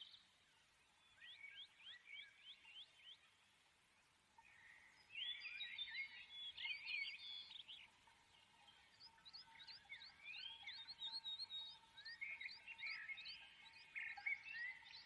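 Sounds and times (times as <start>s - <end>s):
bird chirping and trilling: 4.4s - 15.0s.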